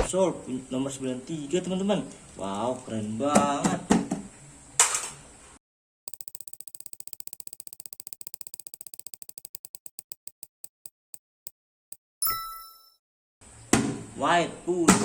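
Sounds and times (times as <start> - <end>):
prize wheel ticking: 6.1 - 10.9.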